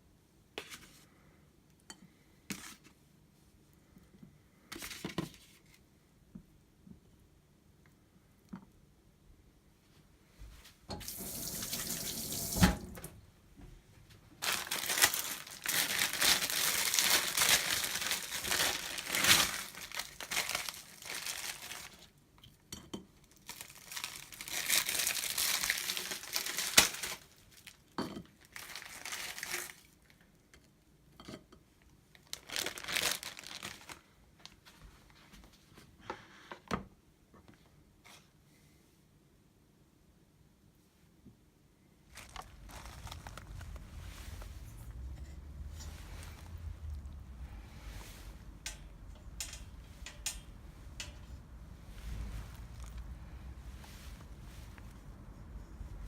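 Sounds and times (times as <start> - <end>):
water running from a tap: 11.0 - 13.1.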